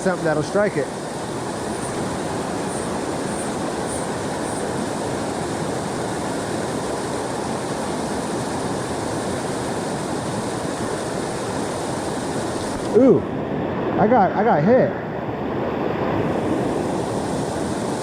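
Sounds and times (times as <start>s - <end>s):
creek water rushing over rocks: 0.0s - 14.1s.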